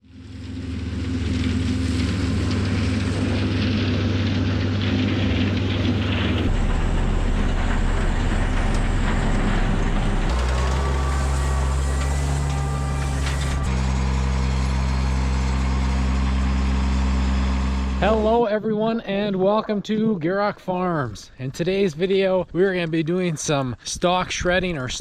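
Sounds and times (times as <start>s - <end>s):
tractor engines running: 0.0s - 20.0s.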